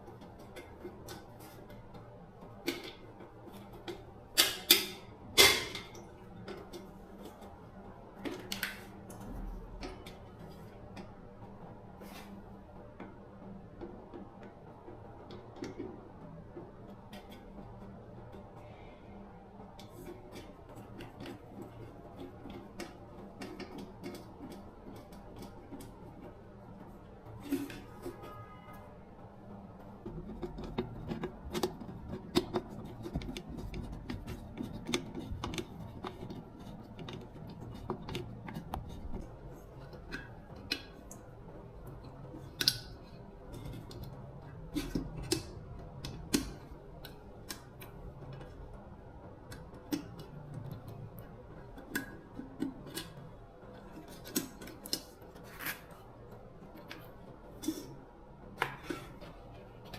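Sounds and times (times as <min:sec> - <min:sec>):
hand tools clicking and tapping: 0:00.0 - 0:11.2, 0:19.7 - 0:28.3, 0:29.9 - 0:56.0
low steady hum: 0:00.0 - 0:59.9.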